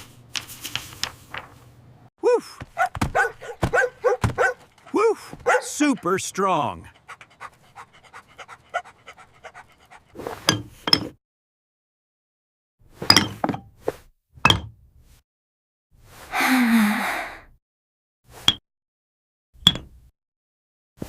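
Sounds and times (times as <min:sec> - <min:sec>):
dog panting: 0:02.8 - 0:10.2
breathy rush: 0:03.4 - 0:10.2, 0:16.3 - 0:17.5.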